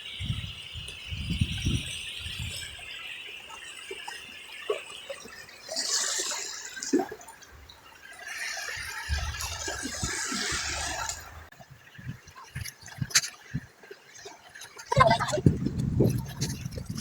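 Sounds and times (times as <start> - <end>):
seawater sloshing and dripping: 2.7 - 17.0
water splashing: 3.5 - 17.0.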